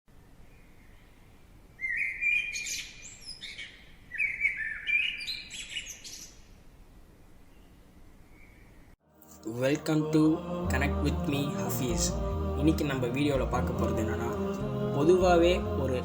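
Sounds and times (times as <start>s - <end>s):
birds chirping: 1.8s - 6.5s.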